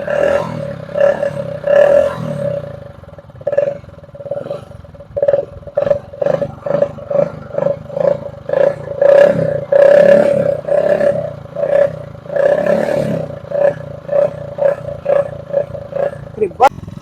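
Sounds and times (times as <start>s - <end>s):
motorcycle exhaust revving: 0.0s - 17.0s.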